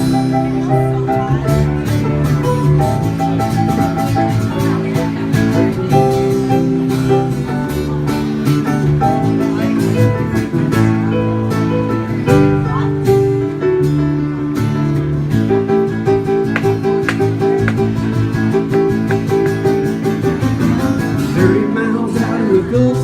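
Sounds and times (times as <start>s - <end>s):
bass guitar: 0.0s - 23.0s
guitar melody: 0.0s - 23.0s
steady drum beat: 16.5s - 20.6s.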